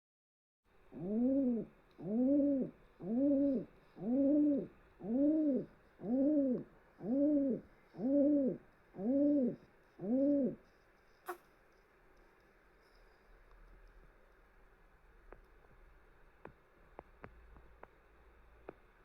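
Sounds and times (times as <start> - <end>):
pigeon cooing: 0.9 - 10.6.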